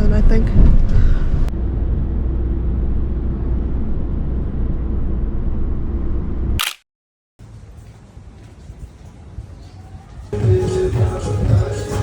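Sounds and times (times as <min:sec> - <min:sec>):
car road and engine rumble: 0:00.1 - 0:06.6
short sharp burst: 0:06.6 - 0:06.8.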